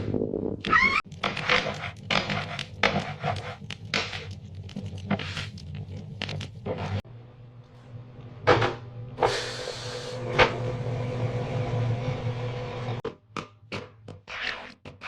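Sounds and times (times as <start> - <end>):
microwave oven humming: 7.1 - 13.0.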